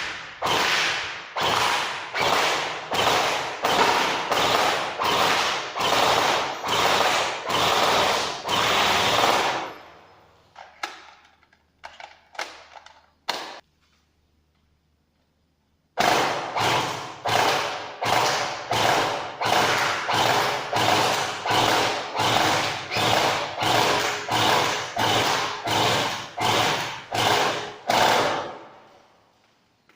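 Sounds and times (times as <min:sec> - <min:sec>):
toy gun firing shots: 0:00.0 - 0:09.7, 0:16.0 - 0:28.6.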